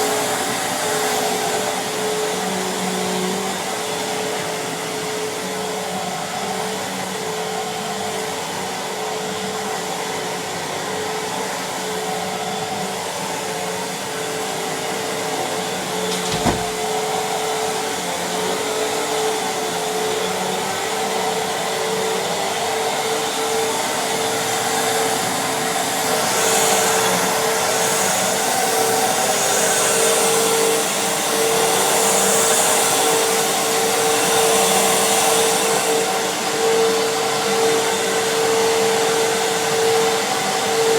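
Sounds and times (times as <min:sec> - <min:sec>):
vacuum cleaner running: 0:00.0 - 0:40.9
single knock: 0:16.1 - 0:16.9.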